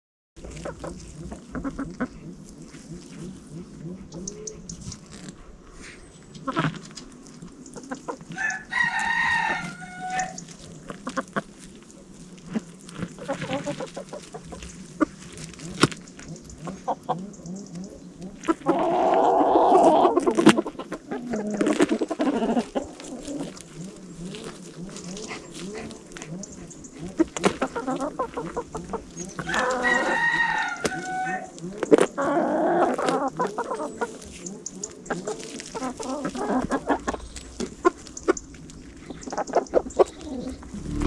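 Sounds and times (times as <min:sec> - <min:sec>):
chickens clucking: 0:00.4 - 0:41.0
rooster crowing: 0:08.4 - 0:10.4, 0:29.5 - 0:31.4.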